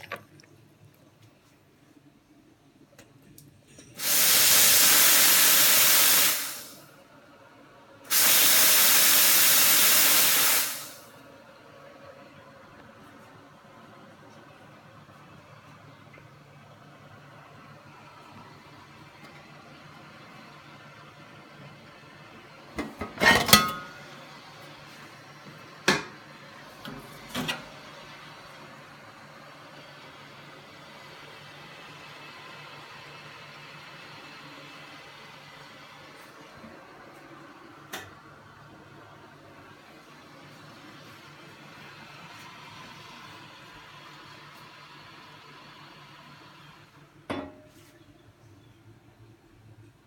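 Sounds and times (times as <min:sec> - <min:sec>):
espresso machine steam hiss: 0:04.0 - 0:06.9, 0:08.1 - 0:11.1
kitchenware clattering: 0:23.0 - 0:24.0.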